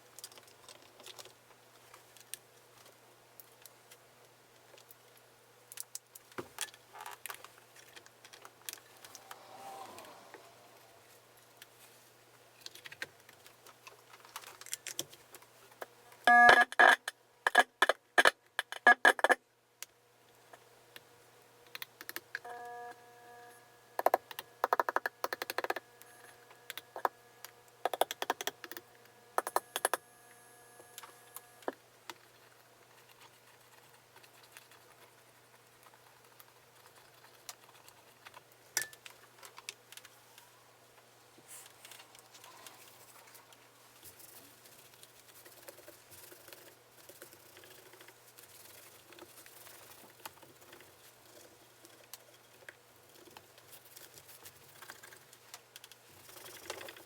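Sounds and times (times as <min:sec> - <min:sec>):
held ringing tone: 0:22.4 - 0:23.7.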